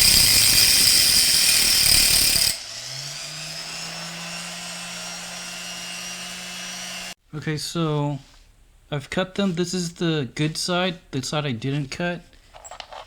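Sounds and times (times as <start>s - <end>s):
rotary tool grinding through bolt: 0.0s - 7.2s
rotary tool whining free: 0.0s - 7.2s.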